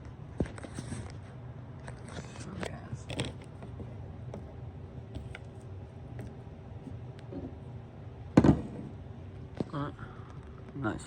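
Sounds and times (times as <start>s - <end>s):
faint steady hum: 0.0s - 11.0s
loud thud: 8.4s - 9.0s.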